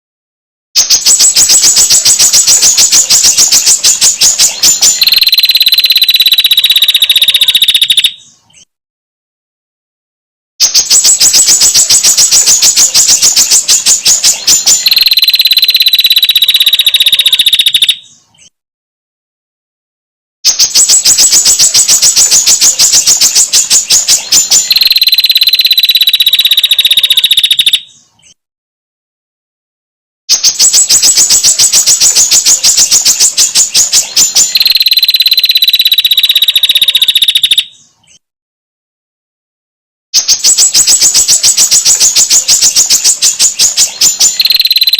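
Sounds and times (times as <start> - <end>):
bird chattering trill: 0.8 - 8.3, 10.6 - 18.2, 20.5 - 28.0, 30.3 - 37.8, 40.2 - 44.9.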